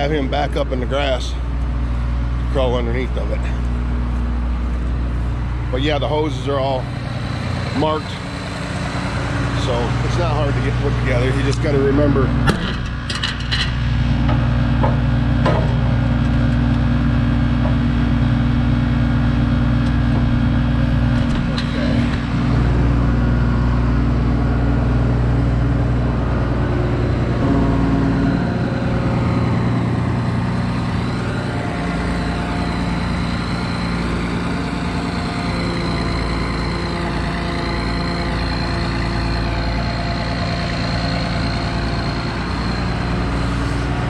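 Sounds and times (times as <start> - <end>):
combine diesel engine running: 0.0 - 44.0
thin high whine: 19.1 - 44.0.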